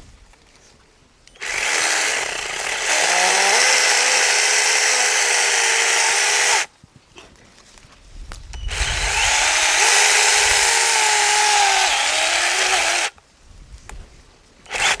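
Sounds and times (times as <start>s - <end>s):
electric chainsaw cutting: 1.4s - 6.7s, 8.7s - 13.2s, 14.7s - 15.0s.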